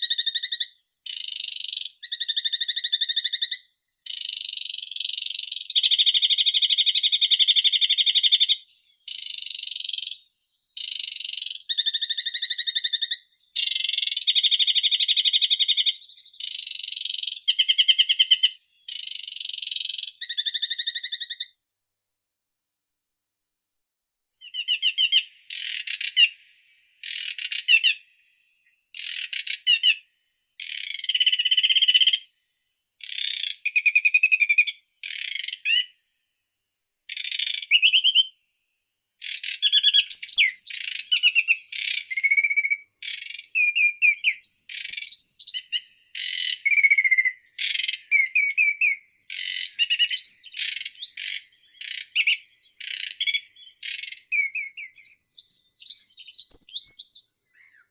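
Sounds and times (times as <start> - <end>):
songbird chirping and trilling: 0.0 - 21.5, 24.4 - 30.0, 39.2 - 57.9.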